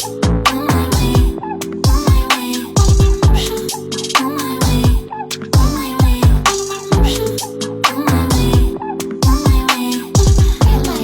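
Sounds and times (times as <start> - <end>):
hi-hat strokes: 2.4 - 4.7.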